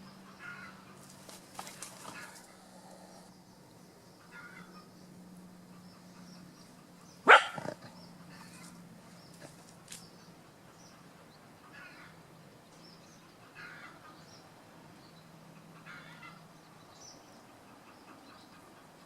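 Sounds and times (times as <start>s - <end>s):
chickens calling: 0.0s - 3.3s.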